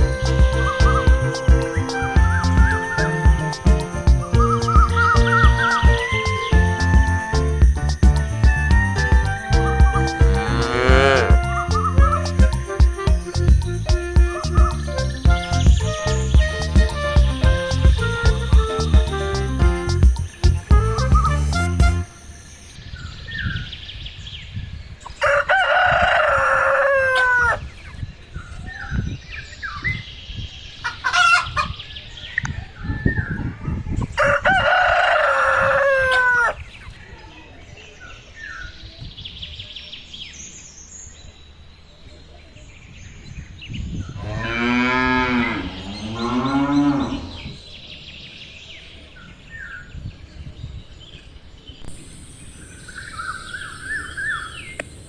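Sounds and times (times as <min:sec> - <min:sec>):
rooster crowing: 0:00.0 - 0:13.0, 0:25.2 - 0:27.6, 0:34.2 - 0:36.6
bird chirps: 0:00.0 - 0:25.2, 0:50.7 - 0:55.0
cow mooing: 0:10.3 - 0:12.2, 0:44.2 - 0:47.6.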